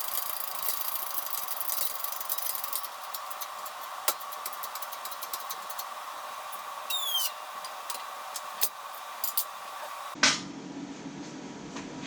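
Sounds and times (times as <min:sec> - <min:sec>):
steady hum: 0:00.0 - 0:10.2
brief squeak: 0:06.9 - 0:07.4.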